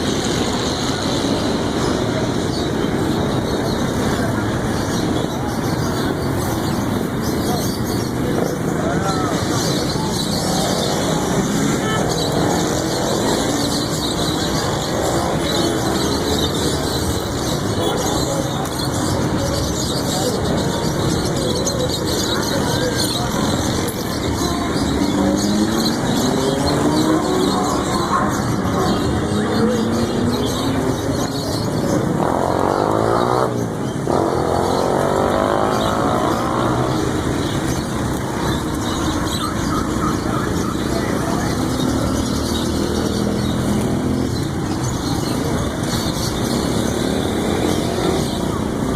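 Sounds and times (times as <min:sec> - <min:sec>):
faint voices: 0:00.0 - 0:48.9
street traffic noise: 0:00.0 - 0:48.9.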